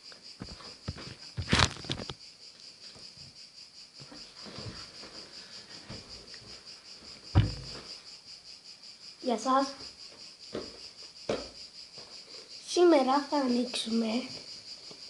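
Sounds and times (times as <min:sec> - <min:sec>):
rustling: 0:00.4 - 0:02.2
knocks close to microphone: 0:07.3 - 0:07.8
heavy thump: 0:07.3 - 0:08.0.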